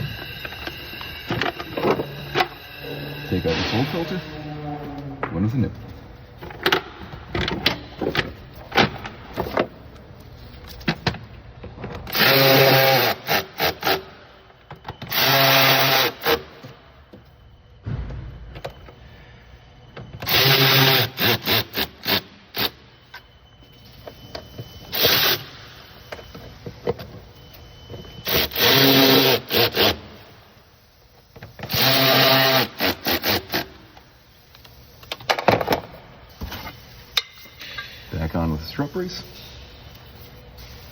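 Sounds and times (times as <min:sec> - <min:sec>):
cordless power tool bursts: 0:12.1 - 0:14.0, 0:15.0 - 0:16.5, 0:20.2 - 0:22.8, 0:28.2 - 0:30.1, 0:31.6 - 0:33.8.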